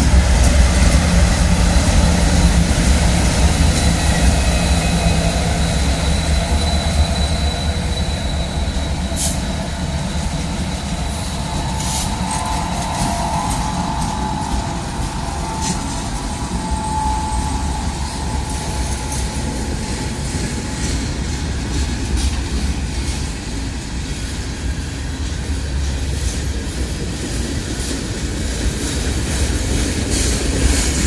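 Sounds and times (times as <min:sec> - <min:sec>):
wheel squeal: 0:00.0 - 0:23.2
train wheels rumbling on rails: 0:00.0 - 0:31.0.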